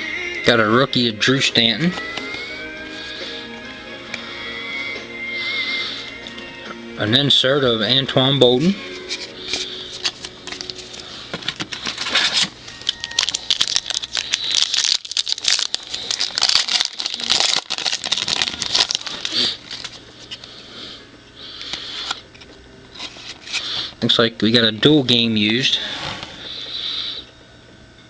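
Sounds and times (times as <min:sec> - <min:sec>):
foil wrappers crinkling: 0:08.9 - 0:20.6, 0:21.6 - 0:24.0
cards clicking being flipped: 0:09.1 - 0:15.7.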